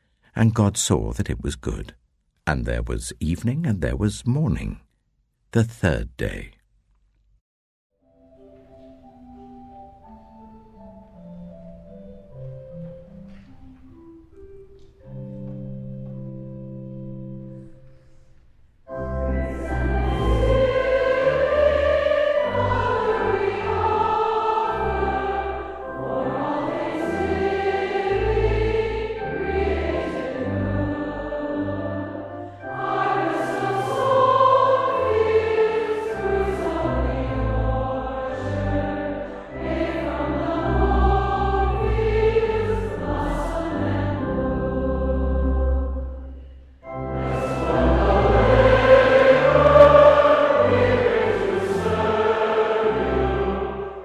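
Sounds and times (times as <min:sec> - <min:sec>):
low instrumental accompaniment: 0:08.1 - 0:18.0, 0:18.9 - 0:54.0
held instrumental chord: 0:18.9 - 0:46.2, 0:46.8 - 0:54.0
choir singing: 0:19.0 - 0:54.0.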